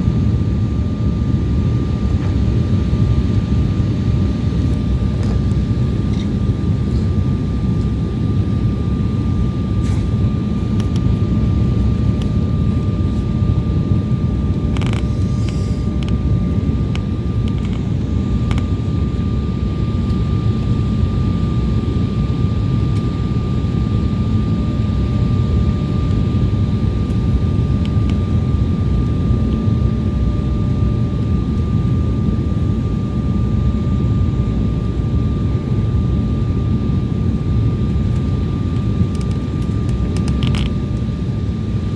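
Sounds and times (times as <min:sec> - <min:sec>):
airliner engine and airflow rumble: 0:00.0 - 0:41.9
thin steady whine: 0:00.0 - 0:41.9.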